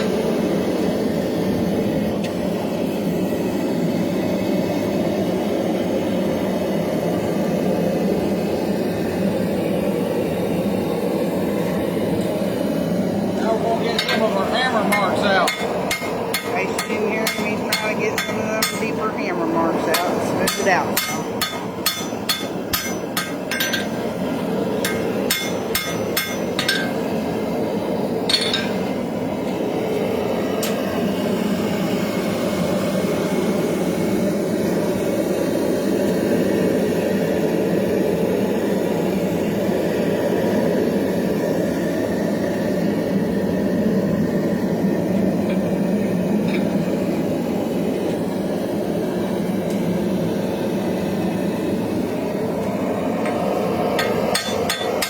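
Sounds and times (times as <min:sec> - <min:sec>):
hammer ringing on anvil: 0:14.9 - 0:18.9, 0:19.9 - 0:24.0, 0:24.8 - 0:27.1, 0:28.3 - 0:28.8, 0:54.0 - 0:55.0.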